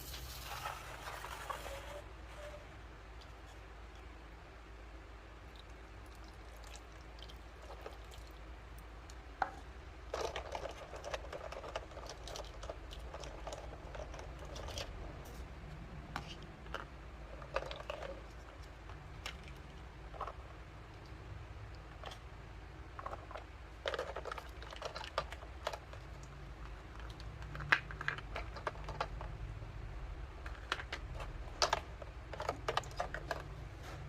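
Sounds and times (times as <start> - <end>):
plastic toy pieces clicking: 23.0 - 29.4.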